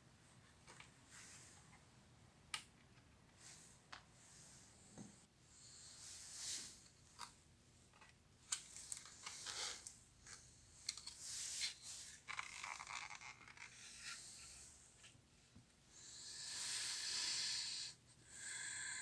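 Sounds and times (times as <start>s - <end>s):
faint clicks of small parts: 6.8s - 13.7s.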